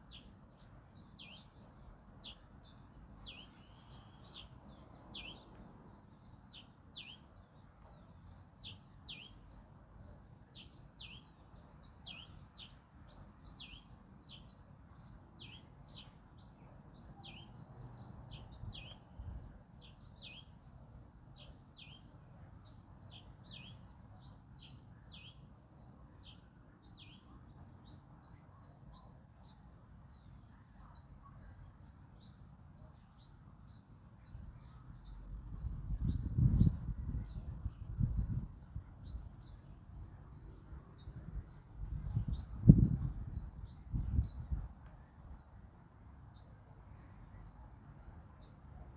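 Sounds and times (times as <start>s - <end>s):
low rumble of wind: 0.0s - 48.9s
songbird chirping: 0.0s - 48.9s.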